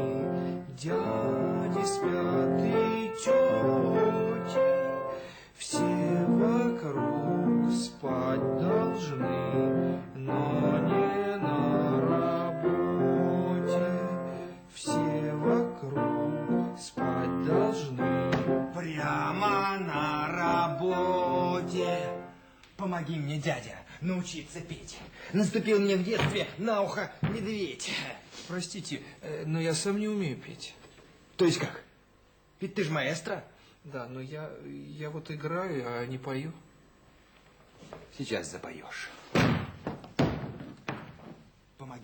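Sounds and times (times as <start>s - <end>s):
person singing: 0.0s - 22.3s
piano music: 0.0s - 22.4s.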